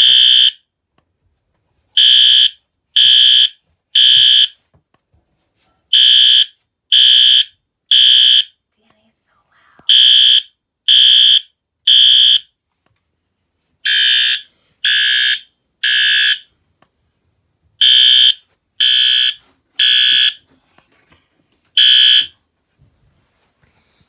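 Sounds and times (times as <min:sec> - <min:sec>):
fire alarm horn beeping: 0:00.0 - 0:00.6, 0:02.0 - 0:04.6, 0:06.0 - 0:08.5, 0:09.9 - 0:12.5, 0:13.8 - 0:16.5, 0:17.8 - 0:20.4, 0:21.8 - 0:22.4.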